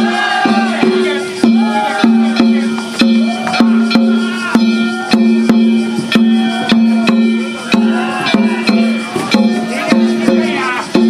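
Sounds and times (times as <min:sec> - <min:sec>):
drum beating: 0:00.0 - 0:11.0
hand gongs ringing: 0:00.0 - 0:11.0.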